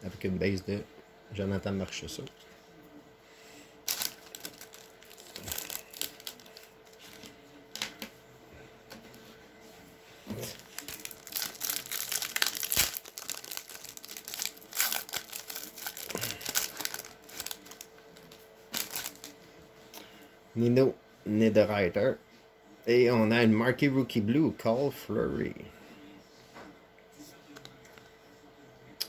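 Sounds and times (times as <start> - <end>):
wrapper tearing and crinkling: 3.9 - 8.0, 10.3 - 19.3.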